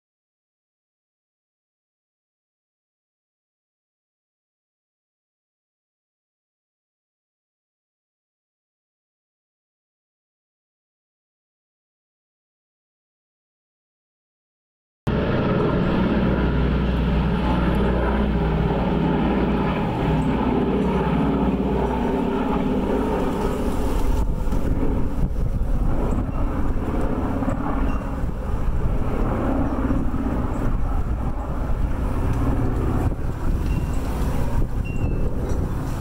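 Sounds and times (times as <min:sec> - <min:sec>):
engine running: 0:15.1 - 0:36.0.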